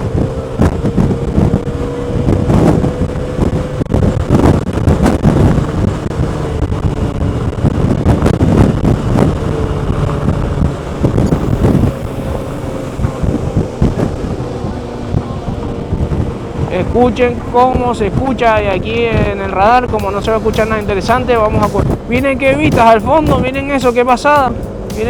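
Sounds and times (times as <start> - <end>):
scooter engine drone: 0.0 - 25.0
wind buffeting microphone: 0.0 - 25.0
steady high note: 11.2 - 16.6, 20.0 - 25.0.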